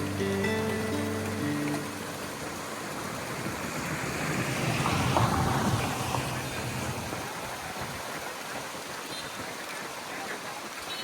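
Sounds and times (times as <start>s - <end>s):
water noise: 0.0s - 11.0s
wind: 0.0s - 11.0s.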